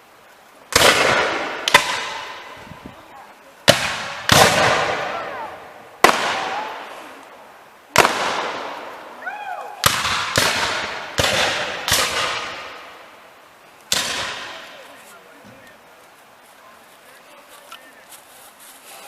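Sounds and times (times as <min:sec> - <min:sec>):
muskets firing with echo: 0:00.7 - 0:02.5, 0:03.7 - 0:07.2, 0:07.9 - 0:09.1, 0:09.8 - 0:13.1, 0:13.9 - 0:14.8.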